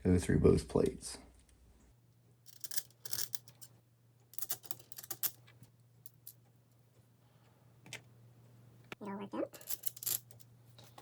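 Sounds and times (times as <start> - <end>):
metal screws clicking: 2.5 - 3.7, 4.3 - 5.5, 9.6 - 10.4.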